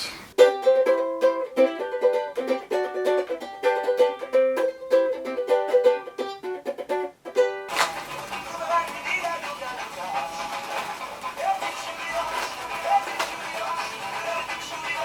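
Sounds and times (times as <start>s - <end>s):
plucked string melody: 0.3s - 15.0s.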